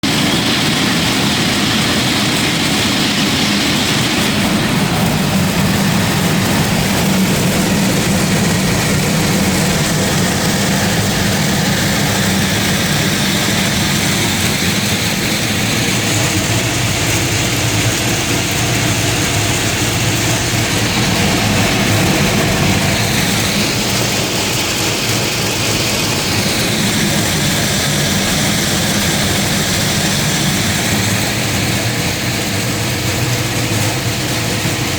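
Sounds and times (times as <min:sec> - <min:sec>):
shelling machine running: 0:00.0 - 0:34.9.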